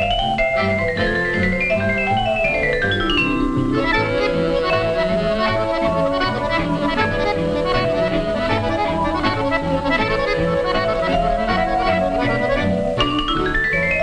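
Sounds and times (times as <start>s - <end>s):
accordion band playing lively tune: 0.0s - 14.0s
bass line: 0.0s - 14.0s.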